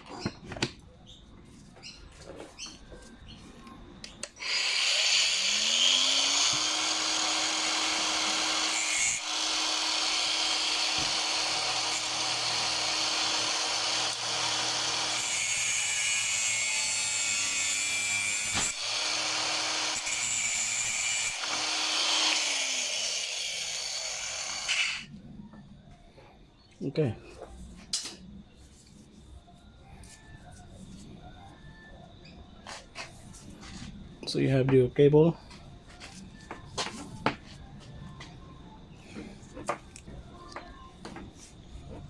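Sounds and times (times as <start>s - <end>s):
angle grinder cutting: 4.3s - 25.1s.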